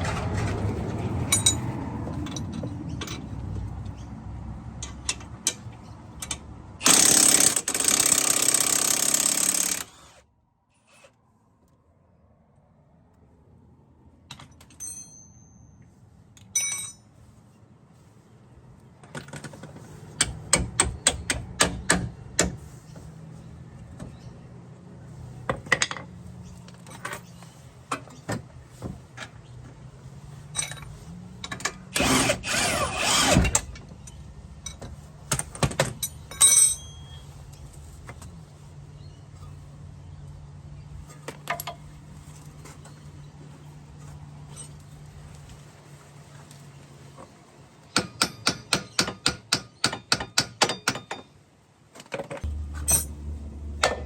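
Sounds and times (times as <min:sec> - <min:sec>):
loud rasping burst: 0:06.8 - 0:10.2, 0:32.0 - 0:33.6
sharp clicks and knocks: 0:52.0 - 0:54.0
steady low hum: 0:52.4 - 0:54.0.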